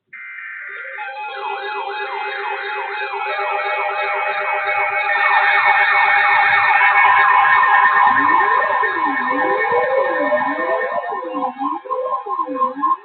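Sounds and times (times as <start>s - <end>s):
falling siren sweep: 0.2s - 13.0s
steady higher alarm tones: 0.2s - 13.0s
fast-pulsing low tone: 6.4s - 13.0s.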